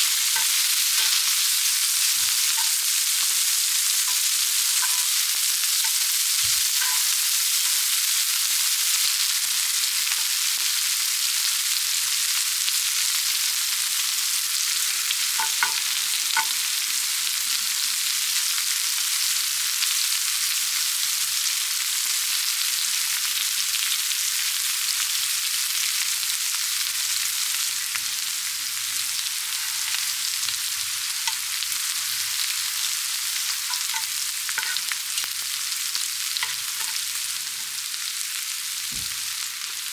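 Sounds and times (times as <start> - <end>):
food sizzling in oil: 0.0 - 39.9.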